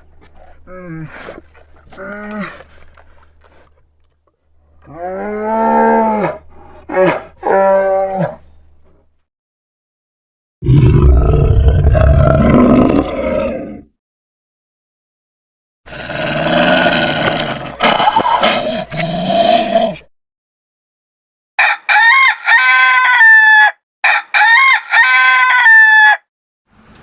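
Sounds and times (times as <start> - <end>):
large animal roaring: 4.8 - 8.4, 10.6 - 13.9, 15.9 - 20.1.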